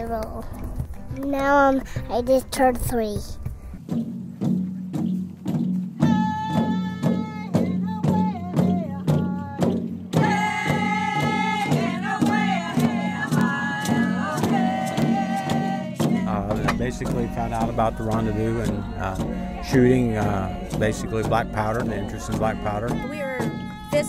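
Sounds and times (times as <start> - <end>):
acoustic folk music: 0.0 - 24.0
person singing: 6.0 - 24.0
low held drone: 16.2 - 24.0.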